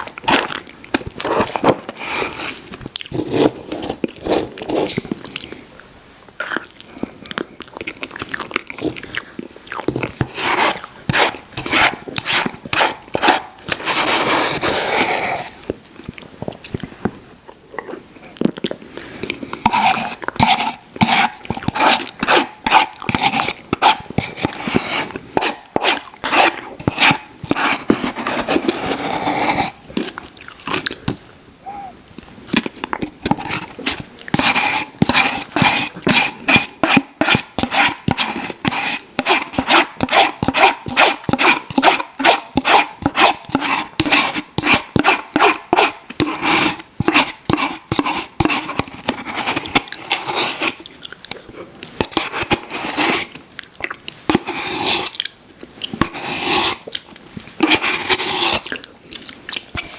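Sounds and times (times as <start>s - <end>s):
wet chewing: 6.4s - 11.4s, 29.9s - 34.4s
lip smacking: 30.2s - 33.0s.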